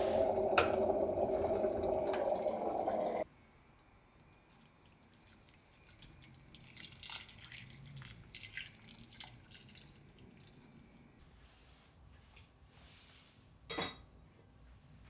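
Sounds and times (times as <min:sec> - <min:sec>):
water splashes and drips: 0:04.2 - 0:11.0.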